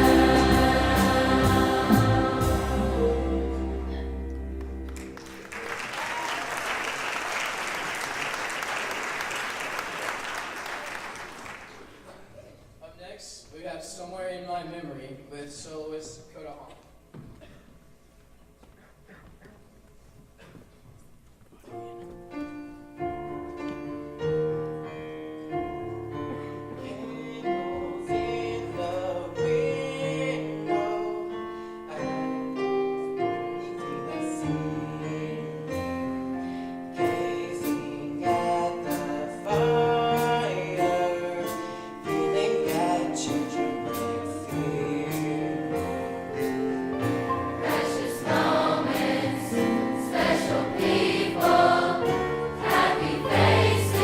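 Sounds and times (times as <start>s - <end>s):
large choir singing: 0.0s - 4.3s, 33.6s - 36.1s, 43.5s - 54.0s.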